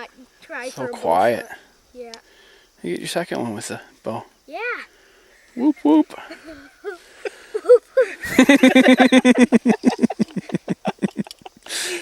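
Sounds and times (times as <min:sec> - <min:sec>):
person laughing hard: 0:06.2 - 0:12.0.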